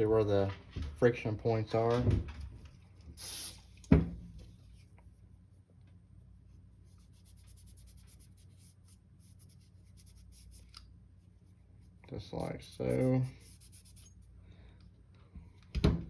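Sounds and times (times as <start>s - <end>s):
scratchy scrubbing strokes: 6.3s - 14.3s.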